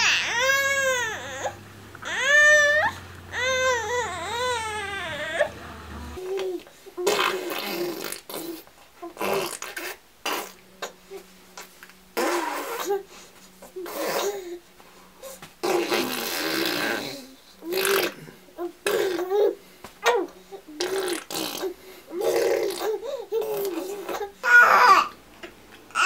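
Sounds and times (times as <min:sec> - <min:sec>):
child squealing: 0:00.0 - 0:05.6.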